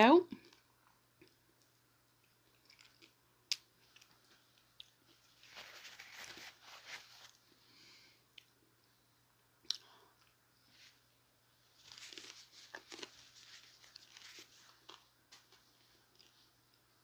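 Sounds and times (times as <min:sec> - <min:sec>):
biting and chewing food: 0:00.4 - 0:05.3, 0:11.8 - 0:16.4.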